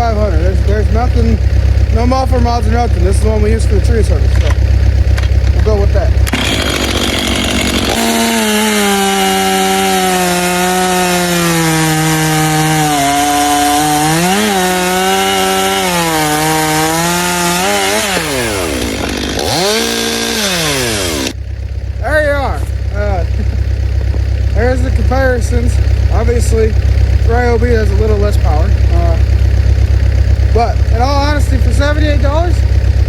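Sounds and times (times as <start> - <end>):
chainsaw cutting wood: 6.2 - 21.4.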